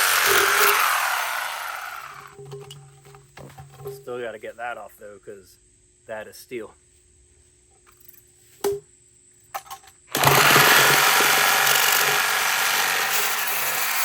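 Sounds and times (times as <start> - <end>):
reciprocating saw cutting steel: 0.0 - 2.4, 10.2 - 14.0.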